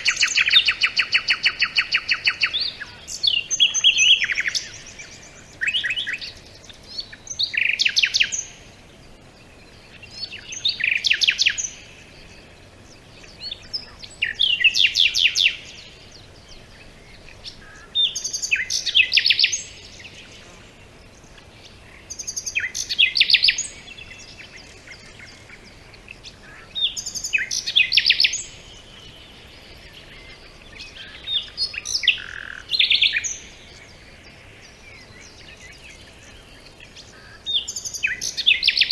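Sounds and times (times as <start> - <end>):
faint background hiss: 0.0 - 38.9.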